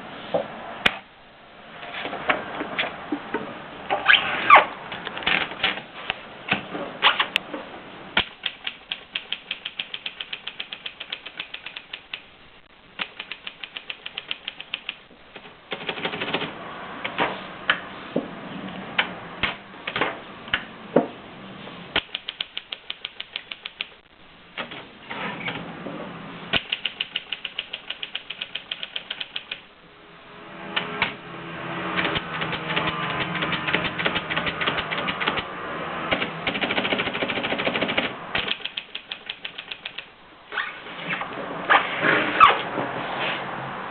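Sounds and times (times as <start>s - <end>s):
manual typewriter typing: 8.2s - 12.3s, 13.0s - 16.6s, 22.0s - 24.0s, 26.5s - 29.7s, 32.0s - 35.5s, 36.1s - 40.2s.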